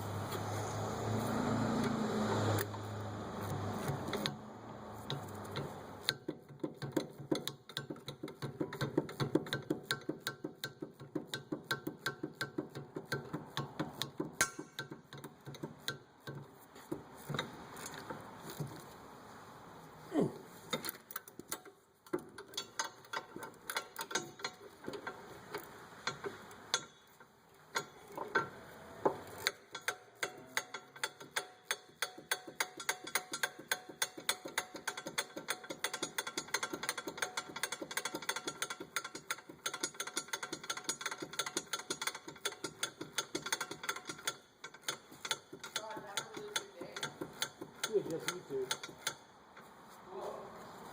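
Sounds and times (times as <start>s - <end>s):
ratchet wrench clicking: 5.0s - 16.5s, 29.3s - 49.3s.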